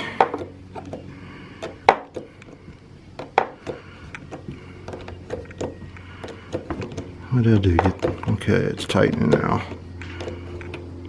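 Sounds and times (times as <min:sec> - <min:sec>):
knocks: 0:07.6 - 0:08.4.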